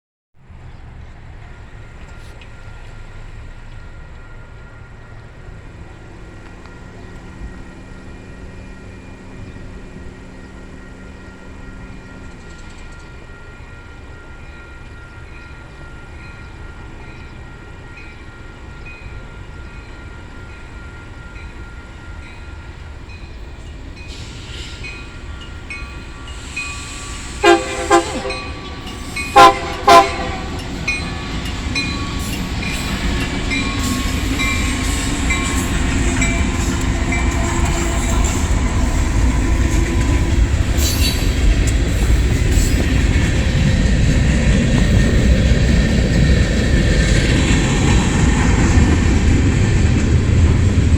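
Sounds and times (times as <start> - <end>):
diesel locomotive rumble: 18.8 - 50.9
train air horn blasts: 26.4 - 31.1, 33.8 - 41.4.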